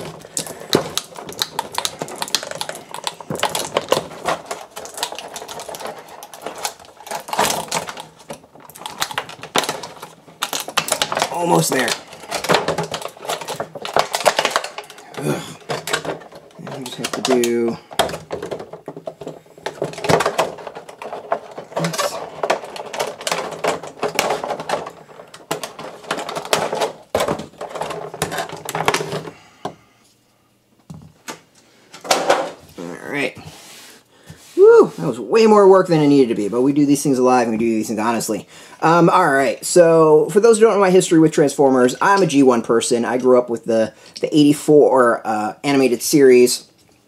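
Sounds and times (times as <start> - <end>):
plastic packaging clicks and crinkling: 0.0 - 29.4.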